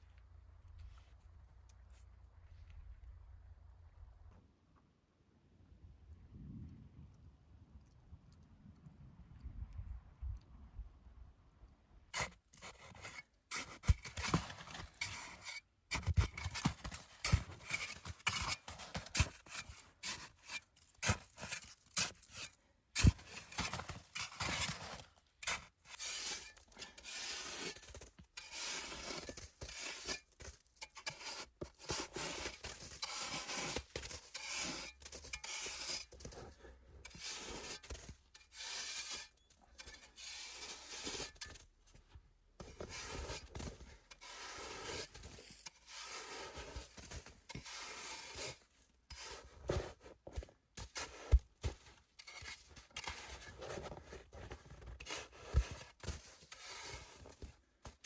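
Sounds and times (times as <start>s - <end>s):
scraping and rubbing strokes: 12.2s - 41.7s, 42.6s - 58.0s.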